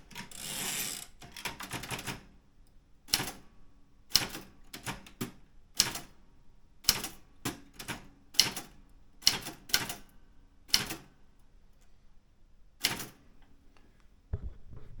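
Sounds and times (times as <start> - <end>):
manual typewriter key strikes: 3.1 - 3.4, 6.8 - 10.0, 10.7 - 11.0.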